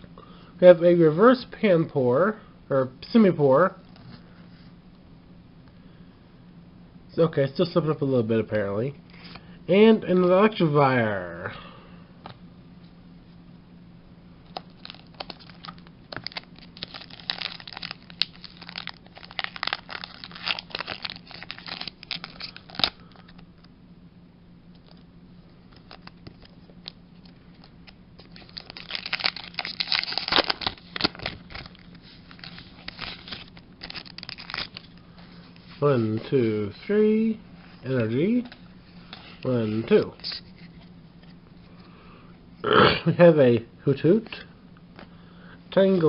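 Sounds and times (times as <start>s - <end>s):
foil wrapper crinkling: 14.5s - 23.4s, 27.6s - 35.6s.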